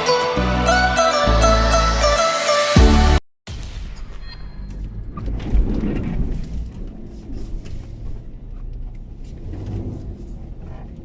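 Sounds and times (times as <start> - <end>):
wind: 3.5 - 11.0
vehicle engine rumble: 4.0 - 11.0.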